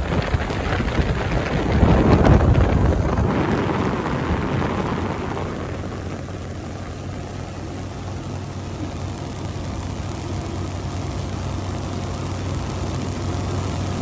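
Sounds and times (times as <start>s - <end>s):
wind rushing on microphone: 0.0s - 7.4s
boat motor humming: 0.0s - 14.0s.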